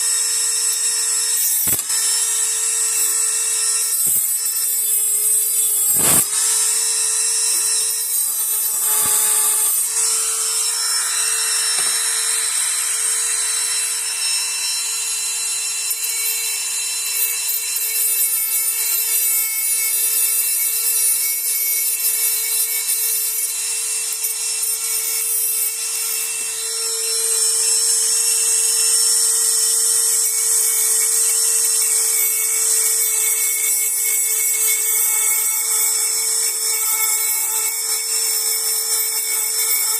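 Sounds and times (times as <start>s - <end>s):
rotary tool cutting metal: 0.0s - 39.9s.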